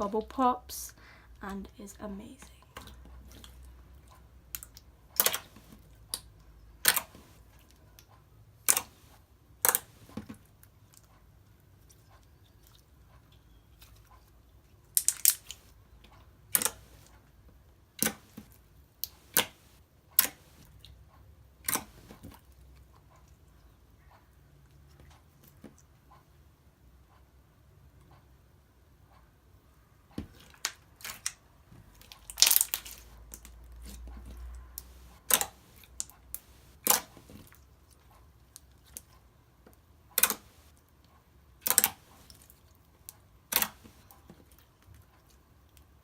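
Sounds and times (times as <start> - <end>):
slime being squeezed: 5.2 - 5.7, 32.1 - 33.4, 34.8 - 37.4.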